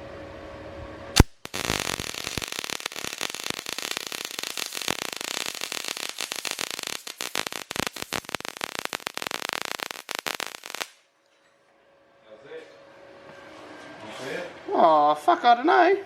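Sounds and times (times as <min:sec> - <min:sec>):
welder arc crackling: 0:01.2 - 0:11.0.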